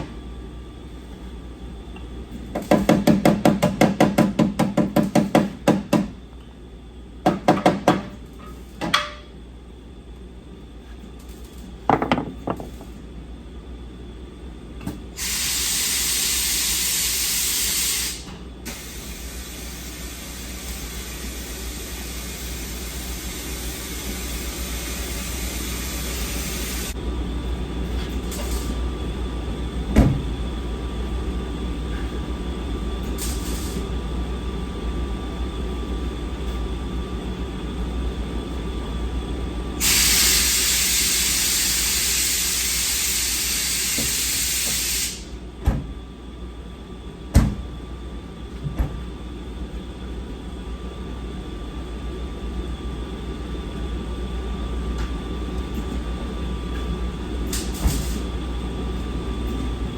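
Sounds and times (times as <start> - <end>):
air hissing: 15.2 - 27.0, 39.8 - 45.4
pneumatic tool hammering: 39.8 - 45.2.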